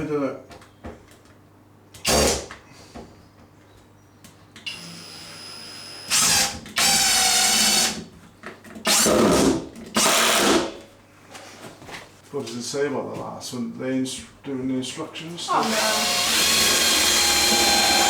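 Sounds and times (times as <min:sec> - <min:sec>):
power drill running: 0:04.7 - 0:08.0, 0:08.9 - 0:09.4, 0:10.0 - 0:10.6, 0:15.6 - 0:18.0.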